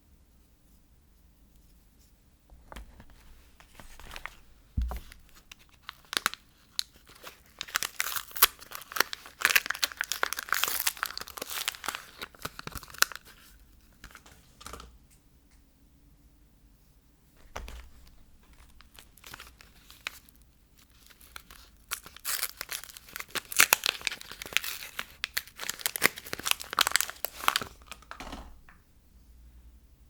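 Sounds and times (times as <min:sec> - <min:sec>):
wrapper crinkling and tearing: 0:02.9 - 0:04.4, 0:05.0 - 0:14.9, 0:17.4 - 0:28.3
soft knock: 0:04.8 - 0:05.3.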